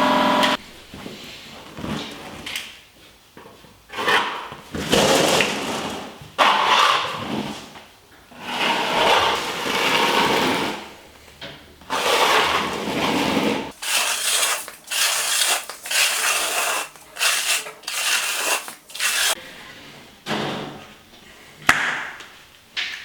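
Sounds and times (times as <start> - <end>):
scraping and rubbing on timber: 11.9 - 19.4.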